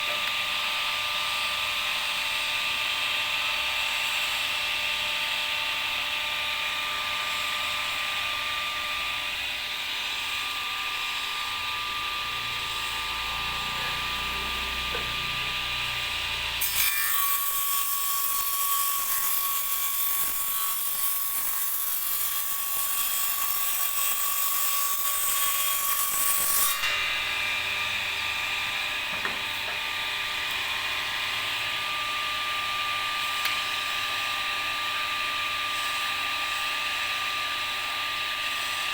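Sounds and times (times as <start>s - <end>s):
electric power tool running: 8.2s - 24.0s, 25.0s - 37.9s.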